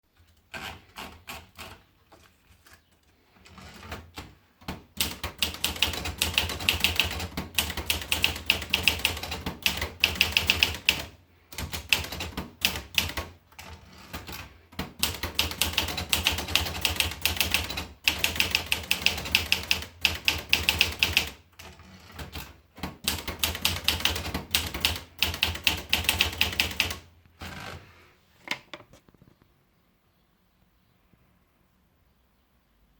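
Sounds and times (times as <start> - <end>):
typewriter keystrokes: 3.7 - 27.1.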